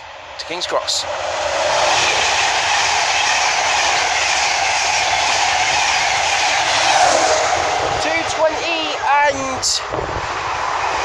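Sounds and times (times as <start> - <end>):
express train rushing past: 0.0 - 11.0.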